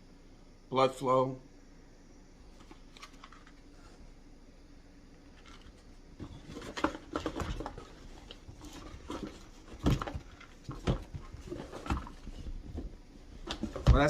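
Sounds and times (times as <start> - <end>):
containers and packaging handled: 2.5 - 4.0, 5.3 - 14.0.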